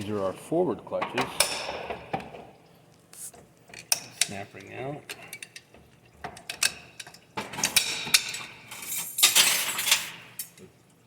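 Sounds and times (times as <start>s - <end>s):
steel clinking and scraping: 6.6s - 10.6s.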